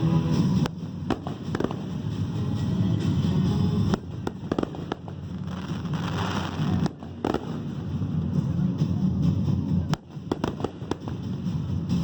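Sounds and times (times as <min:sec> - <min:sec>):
music: 0:00.0 - 0:12.0
fireworks bangs: 0:00.6 - 0:02.3, 0:03.8 - 0:08.3, 0:09.8 - 0:12.0.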